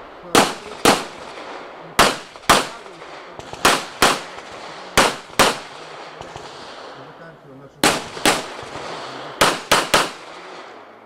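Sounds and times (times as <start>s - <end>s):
handgun shots with echo: 7.8s - 10.8s.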